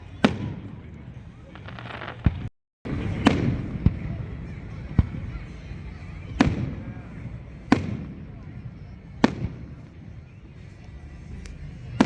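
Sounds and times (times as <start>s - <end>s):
fireworks crackling: 0.0s - 5.3s
firework bangs: 0.0s - 5.4s, 9.2s - 9.9s.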